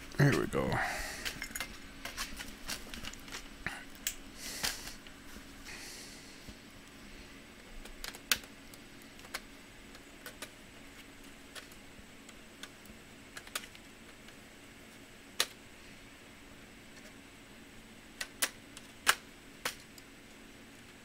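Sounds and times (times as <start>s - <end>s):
laptop parts clicking: 7.6s - 14.4s, 15.3s - 15.6s, 18.2s - 20.1s.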